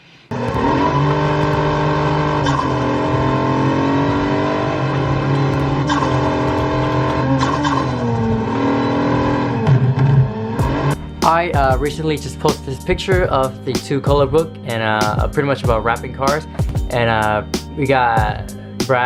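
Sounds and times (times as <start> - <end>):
car engine revving high: 0.3 - 11.8.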